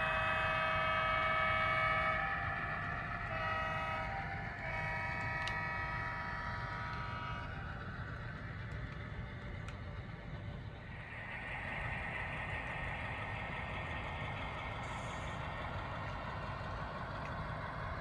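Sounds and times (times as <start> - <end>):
model train horn: 0.0 - 7.8
diesel engine rumble: 0.0 - 18.0.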